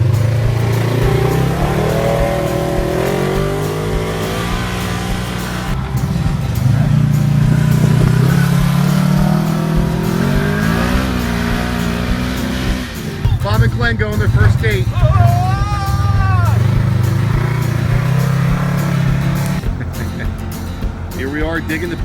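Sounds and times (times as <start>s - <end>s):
vehicle engine accelerating: 0.0s - 22.0s.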